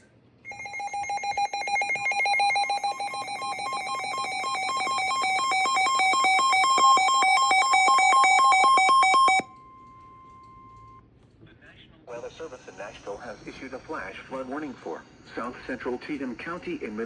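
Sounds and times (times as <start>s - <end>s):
two-tone alert signal: 0.5s - 10.9s.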